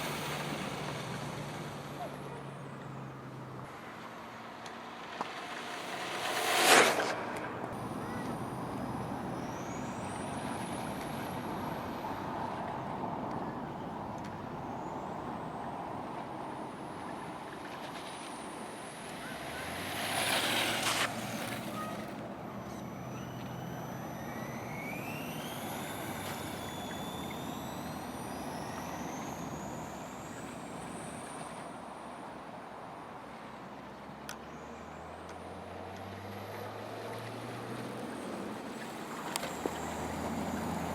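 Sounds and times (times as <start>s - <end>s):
rc car motor whining: 0.0s - 13.0s, 16.6s - 31.9s, 37.7s - 40.9s
rc car passing close: 0.0s - 32.2s, 34.5s - 40.9s.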